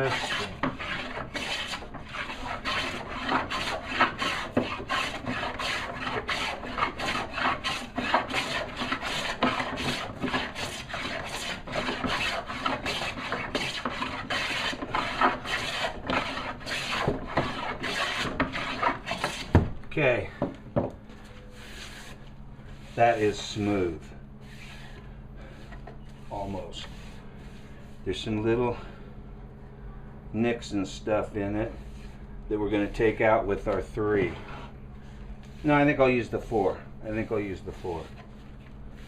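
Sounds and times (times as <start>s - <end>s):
hand plane shaving wood: 0.0s - 19.6s, 35.6s - 38.3s.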